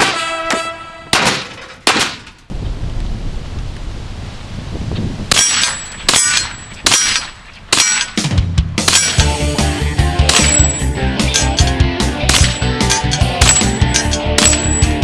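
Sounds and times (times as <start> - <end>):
rifle shots: 5.3 - 9.4, 10.2 - 14.8
high metallic ring: 12.3 - 15.0.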